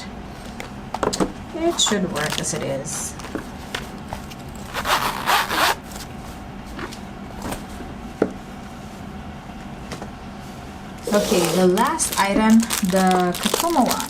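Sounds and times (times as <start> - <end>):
paper planner rubbing against cover: 11.1 - 11.7.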